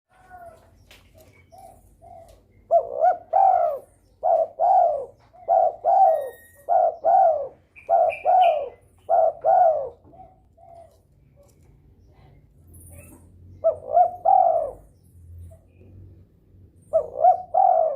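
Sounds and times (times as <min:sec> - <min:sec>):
dove cooing: 0:00.2 - 0:11.6, 0:13.5 - 0:14.9, 0:16.9 - 0:17.9.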